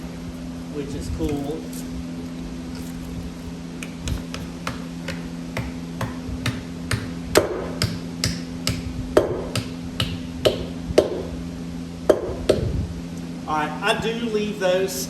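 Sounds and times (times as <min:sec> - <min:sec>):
steady low hum: 0:00.0 - 0:15.0
hammer tapping: 0:03.8 - 0:11.2.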